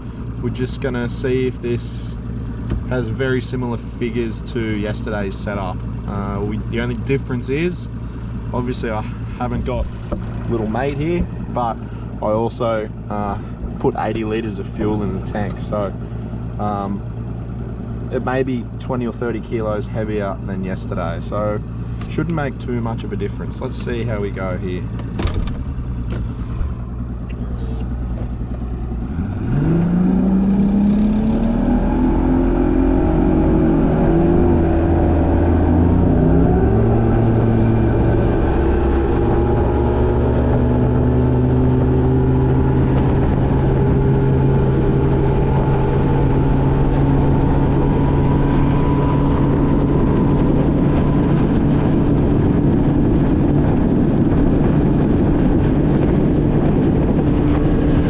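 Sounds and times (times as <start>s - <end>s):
outboard motor revving up: 23.7s - 58.0s.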